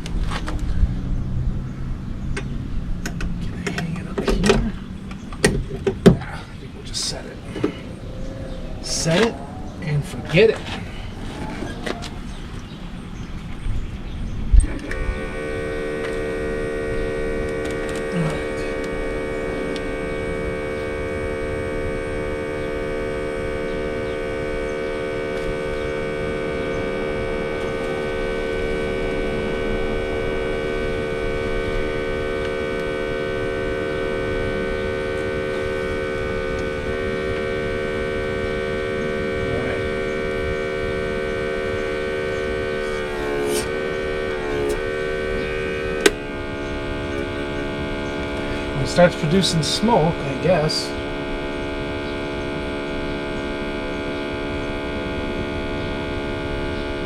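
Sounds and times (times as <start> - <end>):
electric air pump humming: 2.3 - 13.5, 14.6 - 57.0.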